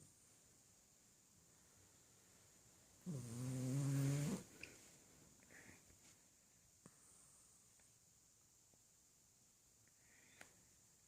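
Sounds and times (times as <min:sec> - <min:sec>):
faint small sounds: 0:00.0 - 0:11.0
dog snoring: 0:03.0 - 0:04.5.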